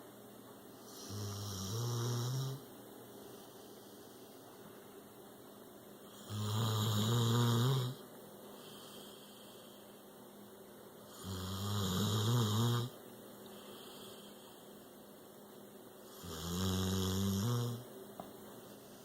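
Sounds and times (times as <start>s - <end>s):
dog snoring: 0.8s - 2.7s, 6.1s - 8.0s, 11.1s - 14.5s, 16.1s - 17.9s
quiet dog breathing: 8.4s - 10.2s, 13.4s - 15.0s.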